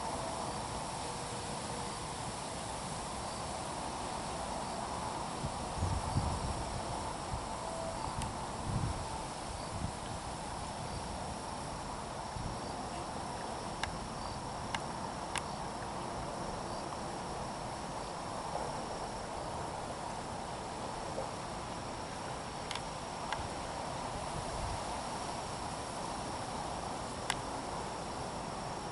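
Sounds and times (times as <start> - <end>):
insect chorus drone: 0.0 - 28.9
faint sharp clicks: 22.7 - 23.5.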